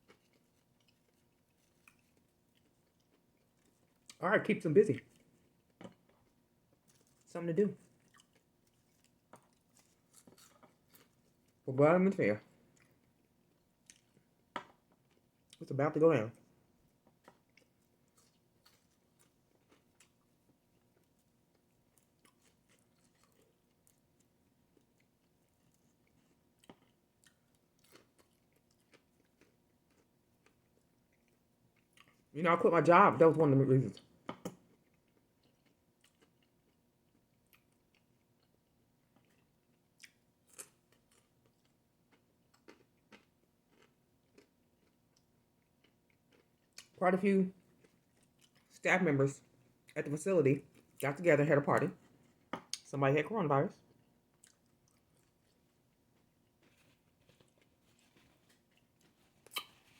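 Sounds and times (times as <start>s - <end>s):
chewing and biting food: 0.0s - 4.2s, 5.0s - 11.6s, 12.6s - 15.6s, 16.4s - 32.3s, 34.0s - 47.0s, 47.6s - 48.8s, 53.8s - 59.9s
small crunches: 54.4s - 59.9s.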